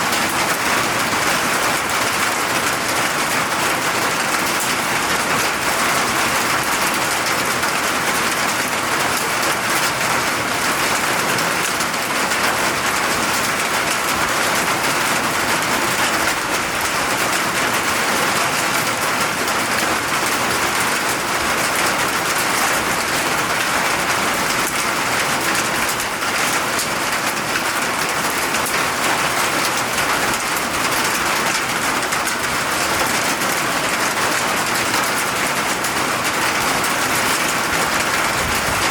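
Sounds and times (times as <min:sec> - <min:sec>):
steady rainfall hiss: 0:20.4 - 0:38.9.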